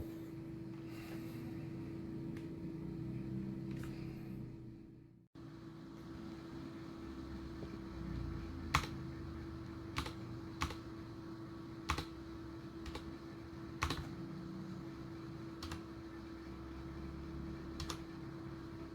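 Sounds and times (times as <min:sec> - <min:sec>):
steady low hum: 0:00.0 - 0:18.9.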